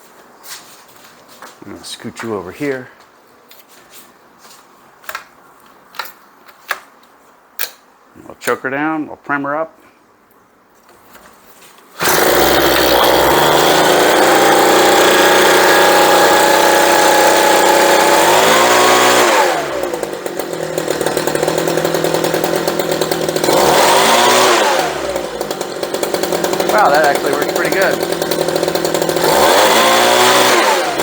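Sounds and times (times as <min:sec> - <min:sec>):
leaf blower engine revving: 0:12.0 - 0:31.0.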